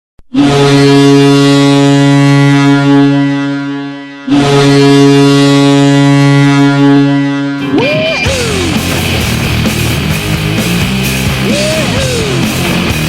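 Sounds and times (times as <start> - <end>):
goal horn blasts: 0.3 - 8.6.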